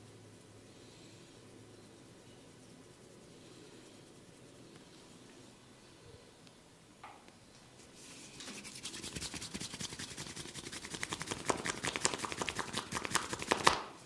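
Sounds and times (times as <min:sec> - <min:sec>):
fast rhythmic rubbing strokes: 0:00.0 - 0:05.3, 0:08.0 - 0:13.8.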